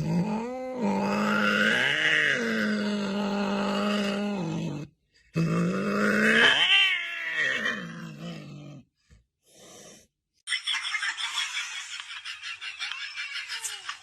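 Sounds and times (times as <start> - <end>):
animal crying: 6.0 - 8.3.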